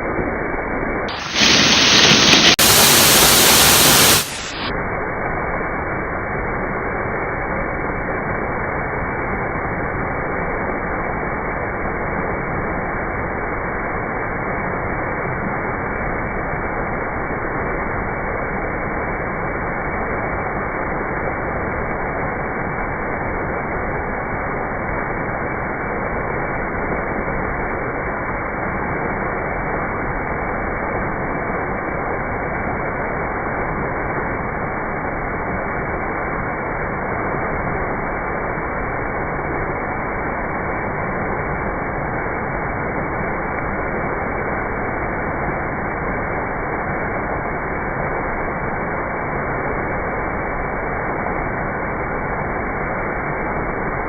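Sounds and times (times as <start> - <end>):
waterfall rushing: 1.1 - 4.7.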